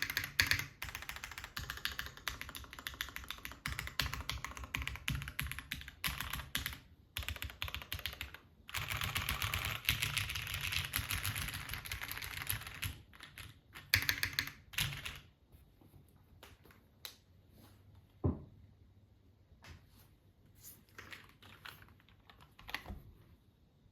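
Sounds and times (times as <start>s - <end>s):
mechanical keyboard typing: 0.0s - 15.3s, 21.0s - 23.0s.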